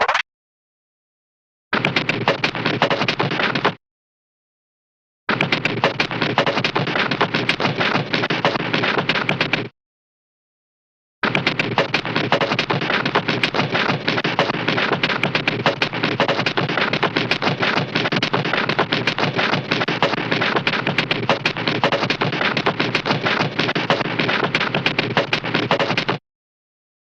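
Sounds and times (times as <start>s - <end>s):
clatter of rapid sharp cracks: 1.8s - 3.8s, 5.3s - 9.7s, 11.2s - 26.2s.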